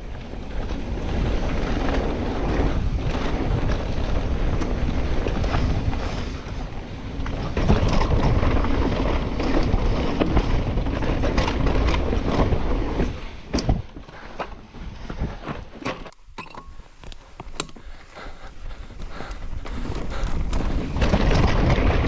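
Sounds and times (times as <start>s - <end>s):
wind on microphone: 0.0s - 14.0s
bike clicks and rattles: 0.0s - 22.0s
bike tyres rolling on dirt: 0.0s - 22.0s.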